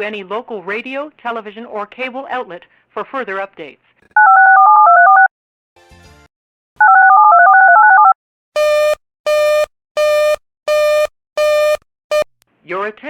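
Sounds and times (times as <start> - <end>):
touch-tone signalling tones: 4.2 - 5.3, 6.8 - 12.3.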